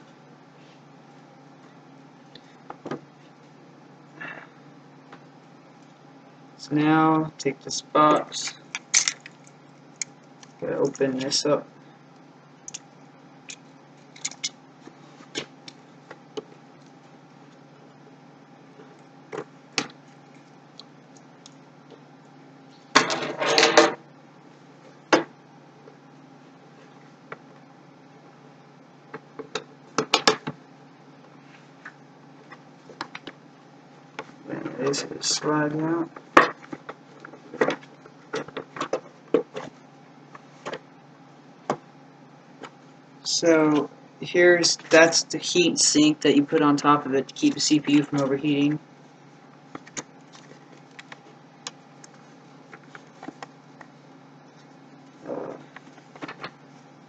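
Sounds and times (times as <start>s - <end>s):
faint steady hum: 0.0s - 57.0s.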